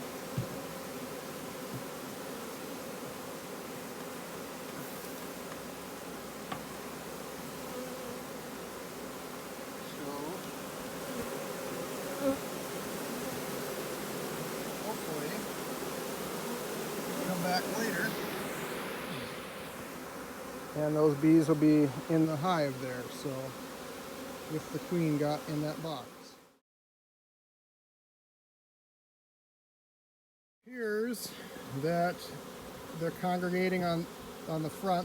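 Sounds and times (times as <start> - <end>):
bees buzzing: 0.0 - 26.5, 30.8 - 35.0.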